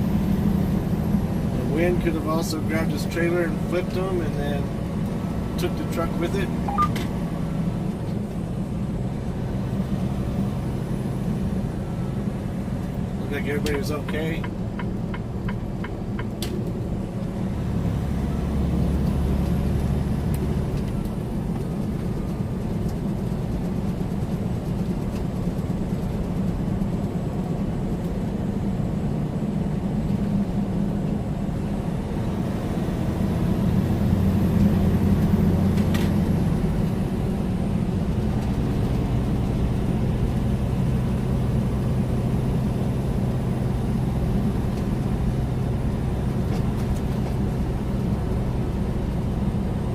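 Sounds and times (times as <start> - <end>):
truck diesel engine drone: 0.0 - 49.9
tyre and road noise: 0.0 - 49.9.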